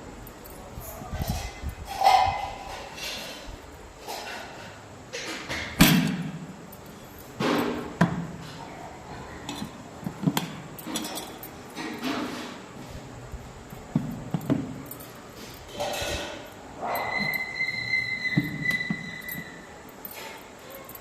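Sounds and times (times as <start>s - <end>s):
hard objects knocking and clinking: 13.7s - 17.5s.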